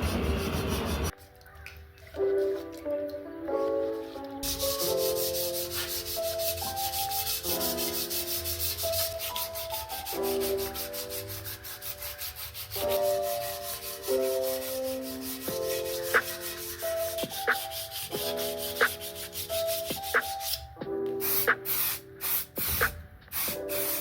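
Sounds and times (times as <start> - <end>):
hand sanding strokes: 0.0 - 1.1, 4.4 - 20.7
lo-fi hip hop music: 1.1 - 24.0.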